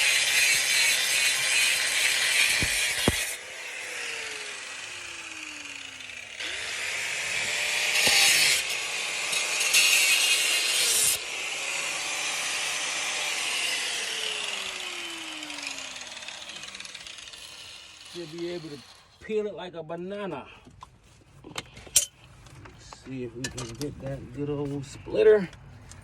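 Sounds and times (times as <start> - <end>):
angle grinder cutting metal: 0.0 - 19.2
sharp knocks: 2.5 - 3.3.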